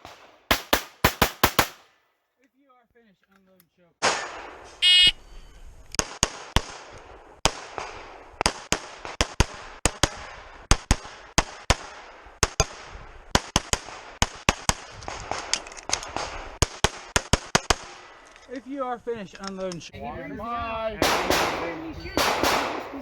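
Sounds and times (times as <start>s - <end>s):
rapid pistol shots: 0.0s - 1.9s, 6.0s - 18.3s, 21.0s - 23.0s.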